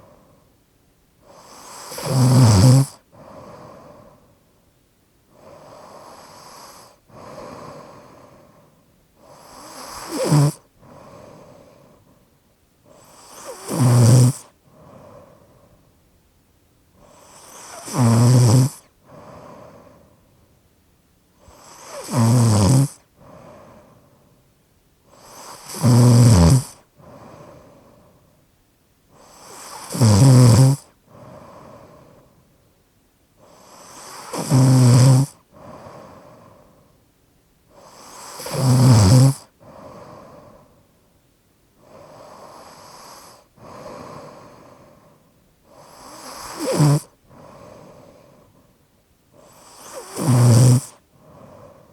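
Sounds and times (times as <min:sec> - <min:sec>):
soft breathing: 0:00.0 - 0:00.6, 0:02.9 - 0:04.7, 0:05.3 - 0:13.6, 0:14.4 - 0:16.1, 0:18.8 - 0:20.6, 0:23.0 - 0:25.4, 0:26.7 - 0:29.5, 0:30.8 - 0:32.7, 0:35.3 - 0:37.1, 0:39.4 - 0:41.1, 0:41.7 - 0:50.2, 0:50.8 - 0:51.9
person snoring: 0:01.3 - 0:04.2, 0:05.3 - 0:08.6, 0:09.2 - 0:12.0, 0:12.9 - 0:15.5, 0:17.0 - 0:20.0, 0:21.4 - 0:24.0, 0:25.1 - 0:28.0, 0:29.2 - 0:32.2, 0:33.4 - 0:36.7, 0:37.8 - 0:40.7, 0:41.8 - 0:45.1, 0:45.7 - 0:48.5, 0:49.4 - 0:51.9.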